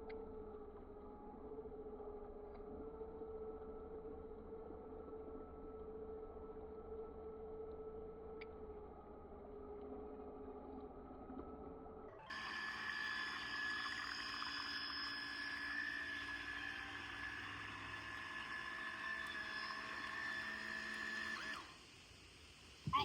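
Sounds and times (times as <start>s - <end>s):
toy boat electric motor whine: 10.9s - 22.6s.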